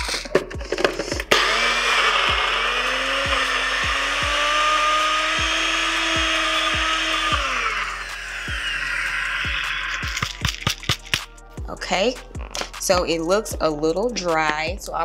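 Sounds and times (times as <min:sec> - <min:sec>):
blender grinding: 0:00.0 - 0:11.3.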